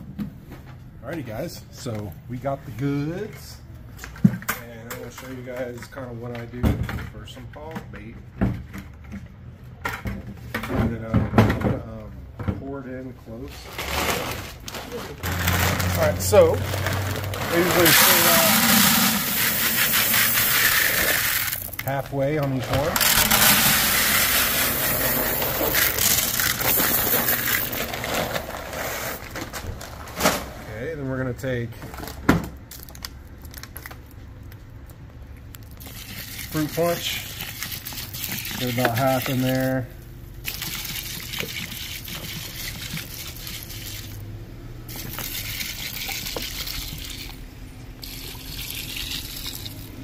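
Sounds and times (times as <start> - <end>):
granular bait pouring into bucket: 15.2 - 21.8, 23.0 - 28.3, 35.8 - 39.7, 40.4 - 44.2, 44.9 - 47.4, 48.0 - 50.0.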